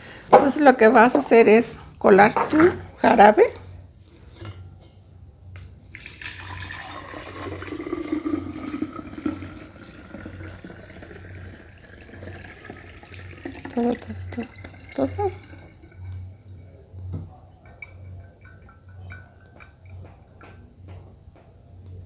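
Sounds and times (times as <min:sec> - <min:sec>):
liquid pouring in steady stream: 0:05.9 - 0:20.6.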